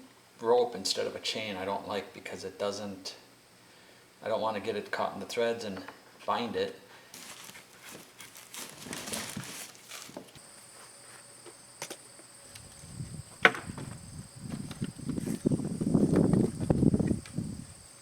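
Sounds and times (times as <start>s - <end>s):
rustling and handling noises: 7.1s - 17.3s.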